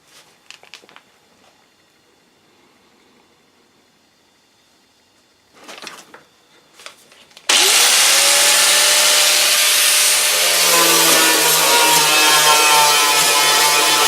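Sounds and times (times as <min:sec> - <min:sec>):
loud hiss: 0:07.5 - 0:14.0
power tool motor whining: 0:07.5 - 0:14.0.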